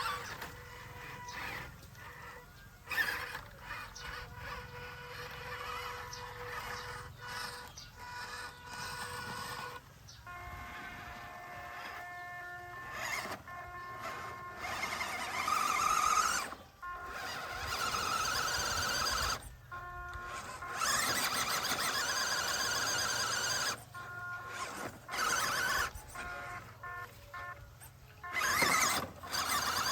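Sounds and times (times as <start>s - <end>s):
electric motor and gearbox whining: 0.0s - 29.9s
tyres spinning in sand: 10.4s - 19.5s, 20.2s - 29.9s.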